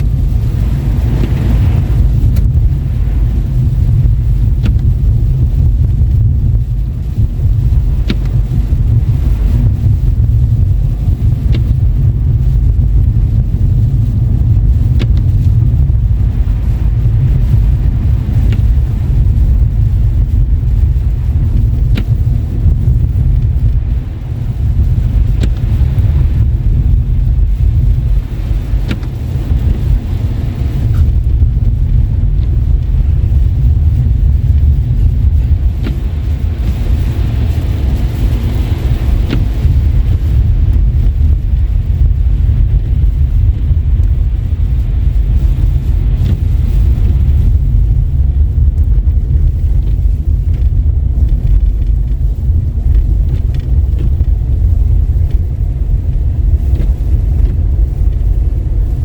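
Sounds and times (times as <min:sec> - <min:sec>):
car driving on slushy road: 0:00.0 - 0:59.0
faint ticks: 0:21.6 - 0:22.2.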